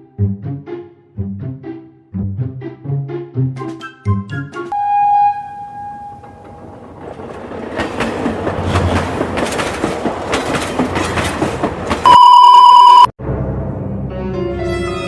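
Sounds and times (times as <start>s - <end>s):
train rumble: 5.8s - 12.1s
train wheels clacking on rails: 6.3s - 12.1s
loud steady tone: 12.0s - 13.2s.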